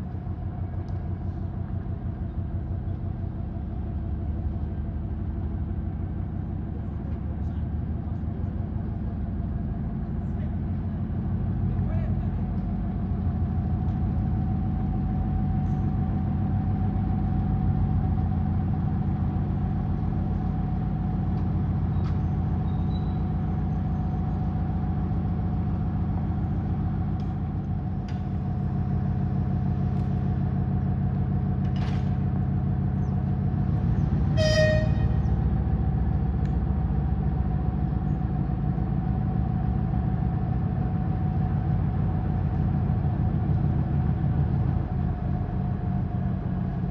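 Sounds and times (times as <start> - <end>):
diesel locomotive engine rumbling: 0.0 - 46.9
short high-pitched horn toot: 34.4 - 35.2.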